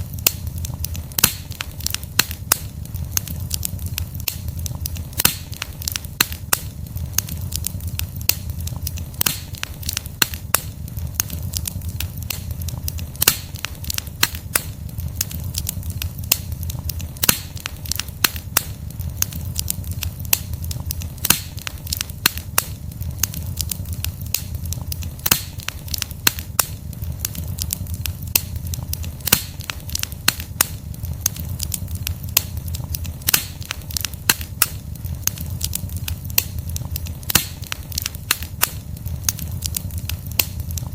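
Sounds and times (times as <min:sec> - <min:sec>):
logs crackling and popping: 0:00.0 - 0:40.9
low rumble of flames: 0:00.0 - 0:40.9.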